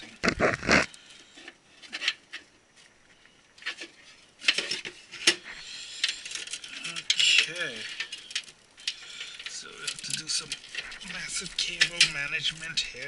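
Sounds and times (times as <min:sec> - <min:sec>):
rustling: 0:00.0 - 0:13.0
clicks and knocks of handling parts: 0:03.5 - 0:13.0.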